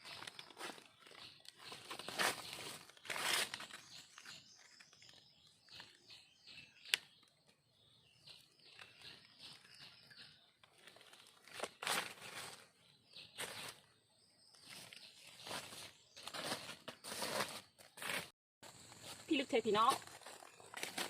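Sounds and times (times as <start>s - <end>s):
dry leaves rustling: 0.0s - 4.2s, 10.8s - 12.7s, 14.7s - 18.2s, 19.0s - 21.0s.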